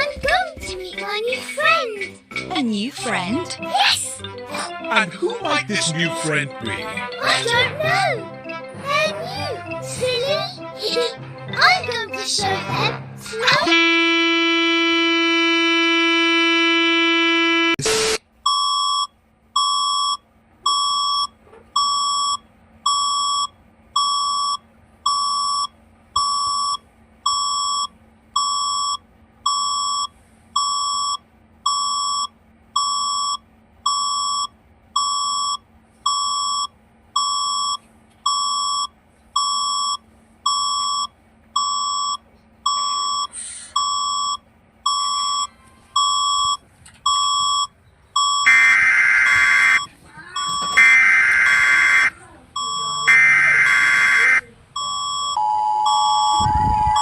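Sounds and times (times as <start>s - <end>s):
steady buzzing alert tone: 1.0s - 18.2s, 48.3s - 49.9s, 50.5s - 54.4s
high electronic beeps: 47.1s - 57.0s.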